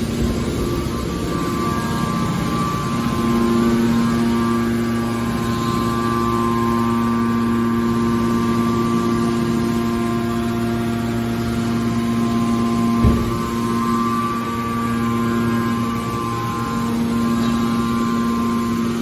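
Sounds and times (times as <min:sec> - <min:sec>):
hydraulic power unit humming: 0:00.0 - 0:19.0
low thump: 0:13.0 - 0:13.6.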